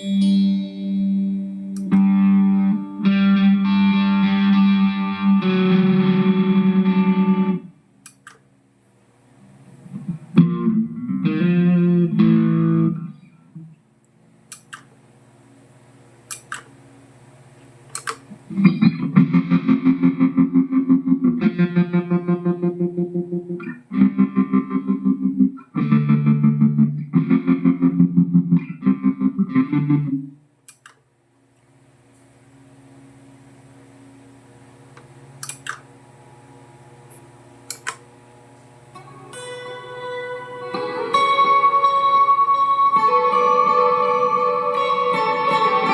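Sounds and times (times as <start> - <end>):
distorted electric guitar chugging: 0.1 - 7.8, 9.9 - 13.7, 18.5 - 30.4, 39.0 - 45.9.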